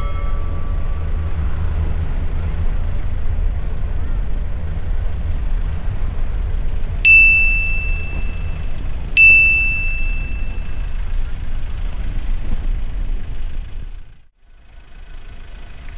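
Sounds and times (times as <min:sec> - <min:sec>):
moving train rumble: 0:00.0 - 0:15.9
bell dings: 0:07.1 - 0:10.9.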